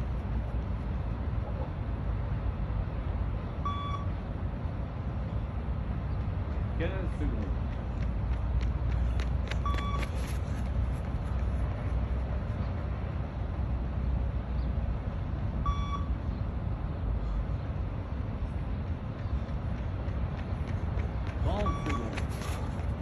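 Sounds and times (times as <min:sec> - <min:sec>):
short electronic beeps: 0:03.6 - 0:04.1, 0:09.6 - 0:10.1, 0:15.6 - 0:16.2, 0:21.5 - 0:22.2.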